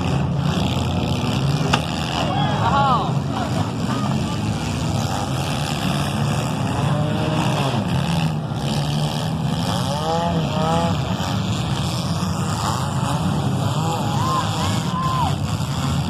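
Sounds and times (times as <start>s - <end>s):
car engines running: 0.0s - 16.0s.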